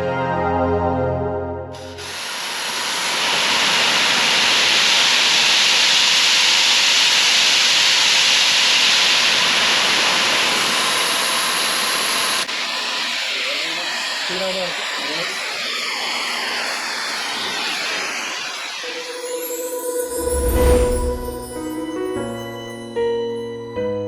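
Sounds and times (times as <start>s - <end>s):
music: 0.0s - 2.0s, 18.9s - 24.0s
pressure washer spraying: 12.4s - 19.6s.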